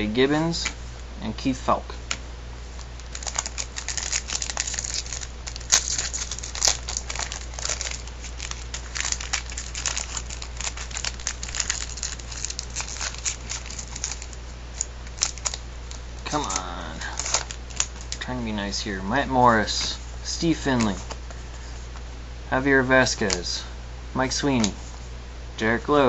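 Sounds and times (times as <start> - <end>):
wrapper crinkling and tearing: 2.8 - 18.2.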